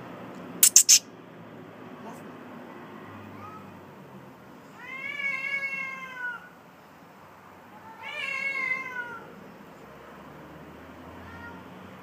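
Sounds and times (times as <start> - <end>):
cat yowling: 4.8 - 6.5, 7.9 - 9.3.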